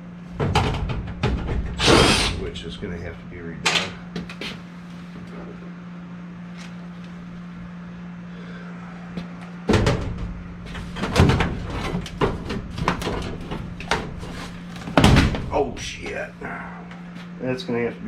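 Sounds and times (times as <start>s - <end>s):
steady low hum: 0.0s - 18.0s
loud knocks and bangs: 0.3s - 2.6s, 9.7s - 16.2s.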